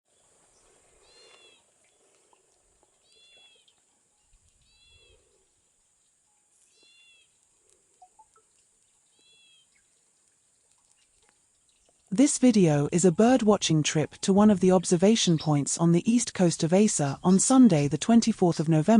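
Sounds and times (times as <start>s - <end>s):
bird mewing call: 1.0s - 1.6s.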